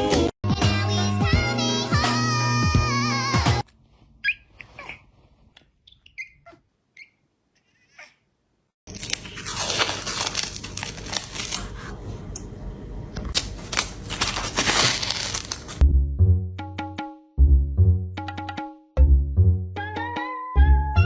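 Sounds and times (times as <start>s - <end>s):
crinkling tearing noise: 8.9s - 12.5s, 13.1s - 15.8s.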